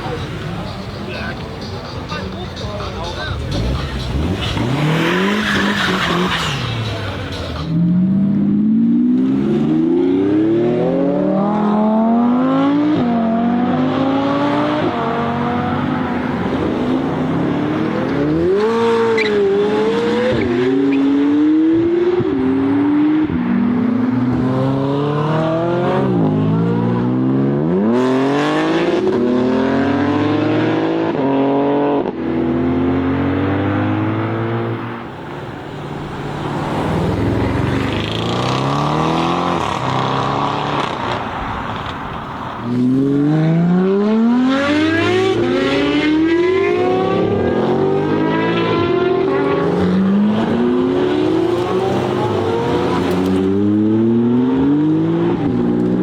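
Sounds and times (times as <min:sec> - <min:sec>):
car engines accelerating and revving: 0:00.0 - 0:56.0.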